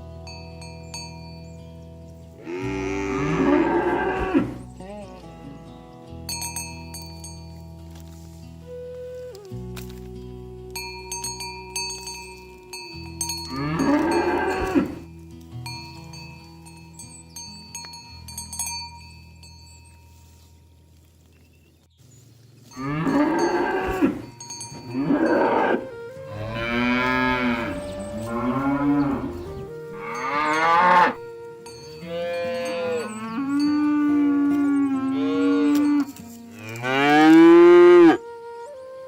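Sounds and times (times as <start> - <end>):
cattle mooing: 2.4 - 4.7, 13.5 - 15.1, 22.8 - 31.3, 32.0 - 38.2.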